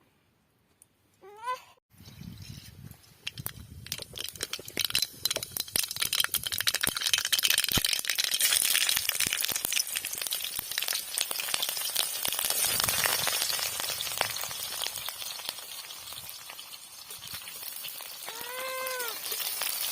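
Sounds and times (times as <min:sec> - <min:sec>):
oil sizzling in pan: 0:04.8 - 0:19.9.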